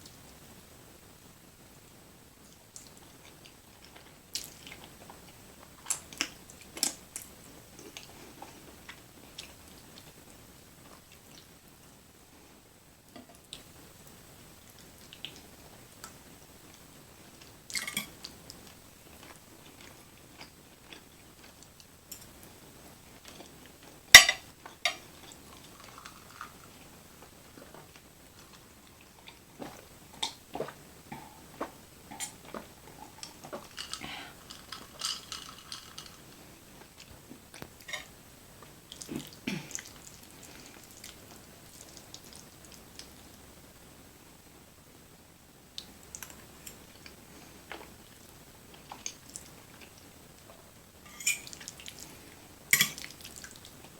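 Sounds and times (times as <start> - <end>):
cutlery clicking on a dish: 24.2 - 25.0, 52.8 - 53.0.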